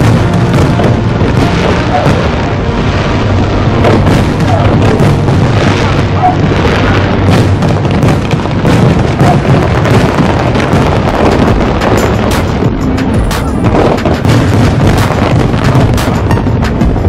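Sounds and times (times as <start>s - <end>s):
fireworks bangs and crackles: 0.0s - 17.0s
steady low rumble: 0.0s - 17.0s.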